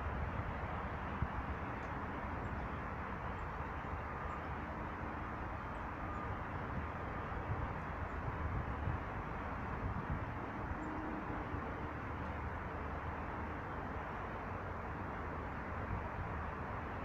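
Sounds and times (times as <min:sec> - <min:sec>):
distant traffic rumble: 0:00.0 - 0:17.0
wind on microphone: 0:06.6 - 0:12.1.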